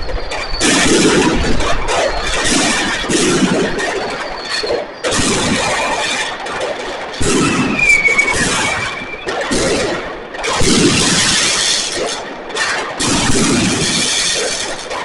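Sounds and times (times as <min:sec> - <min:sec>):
crackling hiss: 0:00.0 - 0:15.0
firework bursts: 0:00.0 - 0:15.0
short whistle dipping in pitch: 0:07.8 - 0:09.3.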